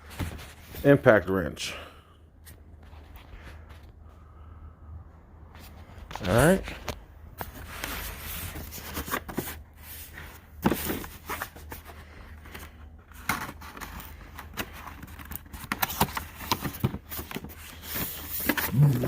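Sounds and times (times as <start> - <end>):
packaging rustling and scraping: 5.6 - 19.0.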